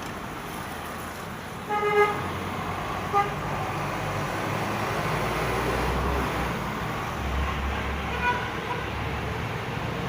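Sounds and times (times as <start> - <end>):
passing traffic rumble: 0.0 - 10.0
vehicle horn toots: 1.7 - 2.2, 3.1 - 3.4.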